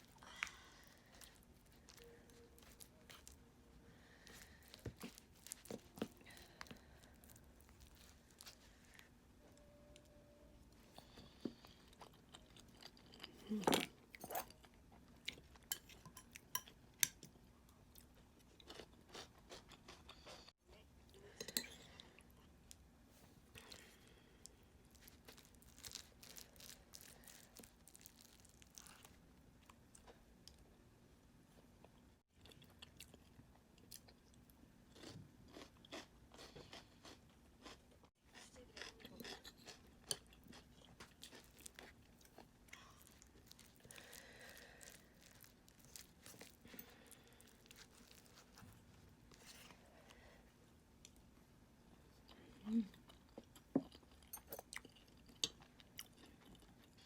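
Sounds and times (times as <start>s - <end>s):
person eating crunchy food: 18.0s - 20.5s, 24.9s - 29.2s, 34.9s - 50.2s.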